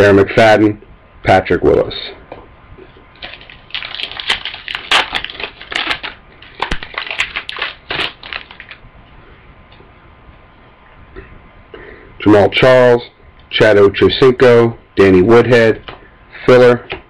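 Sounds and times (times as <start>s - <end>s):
foil wrapper crinkling and tearing: 3.2s - 8.8s.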